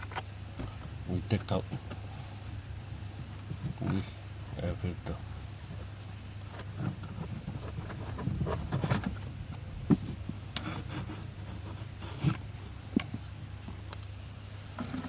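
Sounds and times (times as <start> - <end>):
filter rubbing and scraping: 5.1 - 13.9, 14.7 - 15.0.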